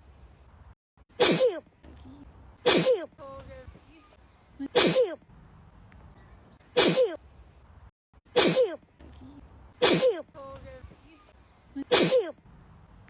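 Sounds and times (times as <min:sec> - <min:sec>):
girl sneezing: 0:01.2 - 0:01.7, 0:02.6 - 0:03.1, 0:04.6 - 0:05.2, 0:06.8 - 0:07.2, 0:08.3 - 0:08.8, 0:09.8 - 0:10.3, 0:11.8 - 0:12.4.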